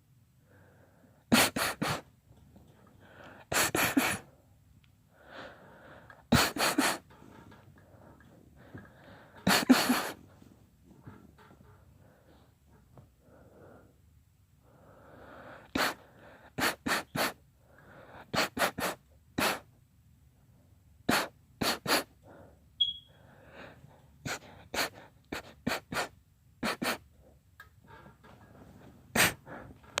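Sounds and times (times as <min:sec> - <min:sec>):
girl sneezing: 0:01.3 - 0:02.1, 0:03.5 - 0:04.2, 0:06.3 - 0:07.0, 0:09.5 - 0:10.2
girl breathing in quickly: 0:05.1 - 0:10.3, 0:13.2 - 0:14.0, 0:14.6 - 0:18.9, 0:22.0 - 0:25.0, 0:28.4 - 0:30.0.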